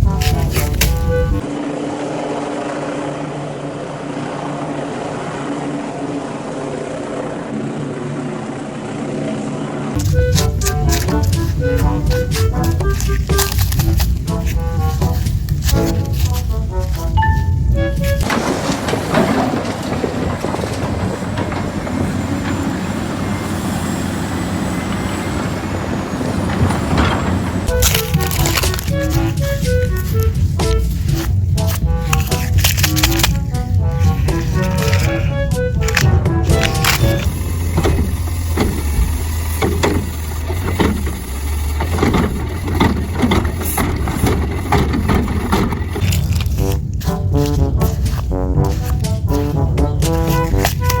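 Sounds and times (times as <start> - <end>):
mechanical rumbling: 0.0 - 51.0
motor humming: 17.6 - 32.4, 33.3 - 46.5.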